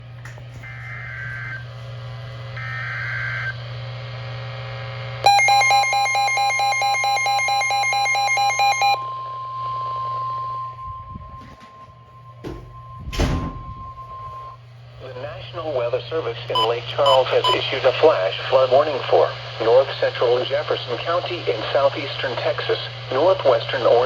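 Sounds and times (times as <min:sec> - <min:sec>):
steady radio hum: 0:00.0 - 0:11.7, 0:14.0 - 0:24.0
data tone bursts: 0:05.3 - 0:09.0, 0:16.6 - 0:17.6
harsh layered alert tone: 0:05.3 - 0:09.0, 0:16.6 - 0:17.6.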